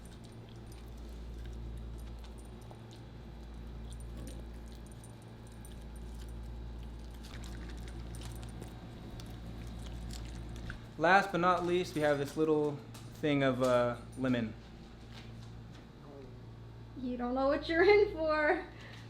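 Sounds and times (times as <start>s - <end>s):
dog chewing: 0.0s - 13.2s
steady low hum: 0.0s - 19.0s.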